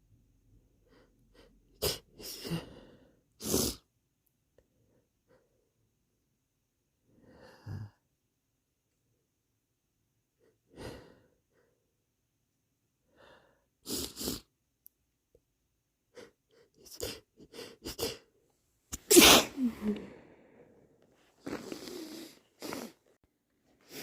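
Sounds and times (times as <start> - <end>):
person sniffling: 1.3 - 3.8, 13.8 - 14.5, 16.1 - 18.3, 18.9 - 20.6, 21.4 - 23.0
short sniffs and breaths: 1.3 - 3.8, 13.8 - 14.5, 16.2 - 18.3, 21.3 - 23.1, 23.8 - 24.0
loud sneeze: 18.9 - 20.2.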